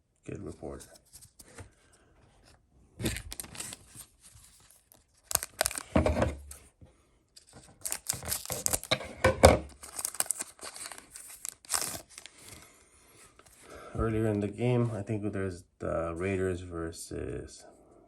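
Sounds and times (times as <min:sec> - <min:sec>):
foil wrapper tearing and crinkling: 0:03.0 - 0:06.0, 0:07.7 - 0:09.0, 0:09.7 - 0:12.6.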